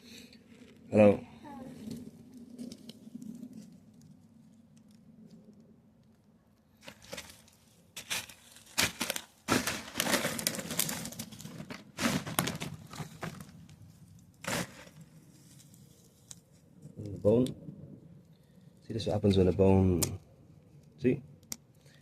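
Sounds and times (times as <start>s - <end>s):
hands digging through soil: 6.8s - 16.6s.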